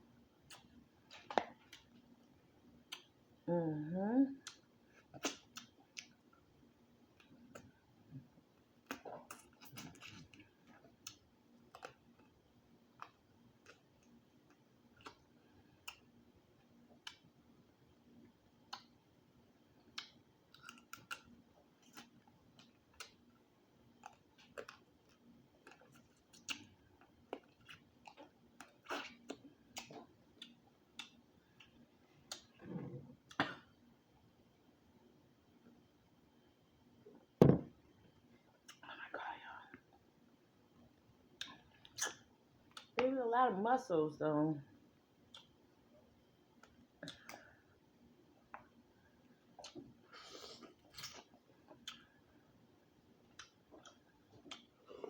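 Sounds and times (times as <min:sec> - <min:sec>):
person chewing wetly: 0:04.4 - 0:06.4, 0:08.6 - 0:17.4, 0:19.8 - 0:32.6, 0:41.3 - 0:43.0, 0:45.2 - 0:45.6, 0:48.4 - 0:55.0.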